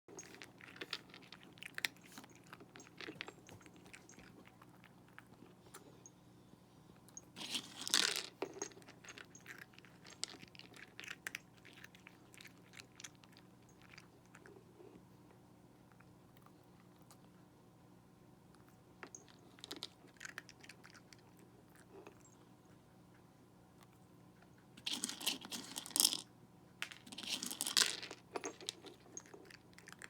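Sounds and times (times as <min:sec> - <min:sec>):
cat crunching dry food: 0:00.1 - 0:05.9, 0:07.4 - 0:15.0, 0:19.0 - 0:22.2, 0:24.5 - 0:30.0.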